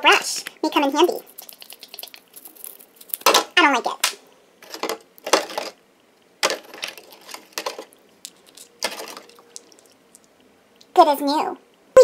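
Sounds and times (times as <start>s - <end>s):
brush scrubbing gemstones: 1.2s - 3.3s.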